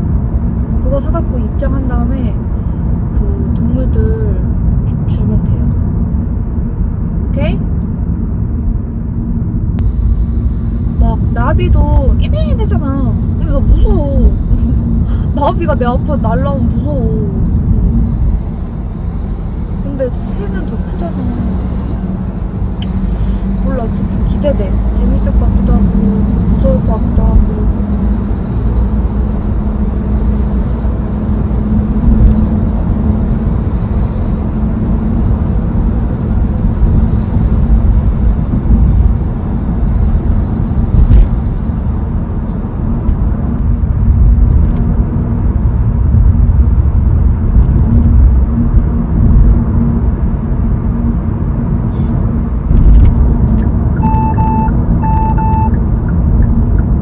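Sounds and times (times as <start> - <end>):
car road and engine rumble: 0.0 - 57.0
short electronic beeps: 53.9 - 56.9.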